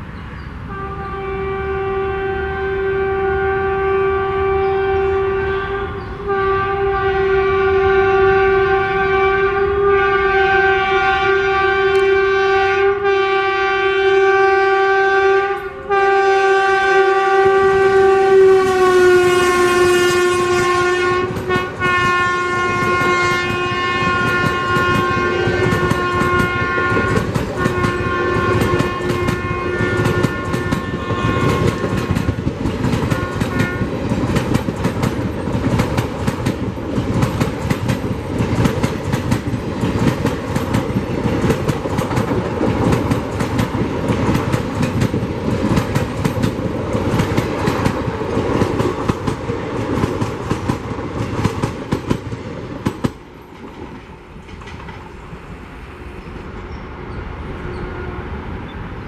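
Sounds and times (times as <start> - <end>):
train horn: 0.2 - 34.7, 55.5 - 58.8
train wheels clacking on rails: 19.4 - 55.5.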